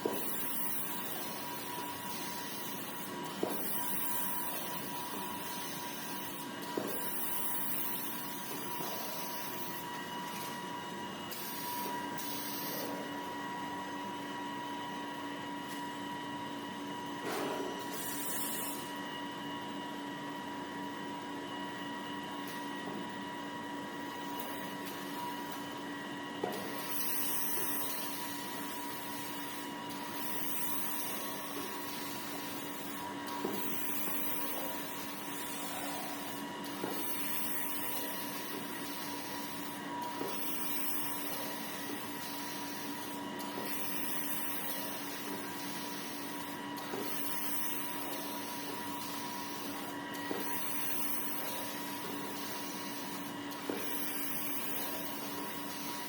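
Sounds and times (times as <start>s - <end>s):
motor hum and whine: 0.0s - 56.0s.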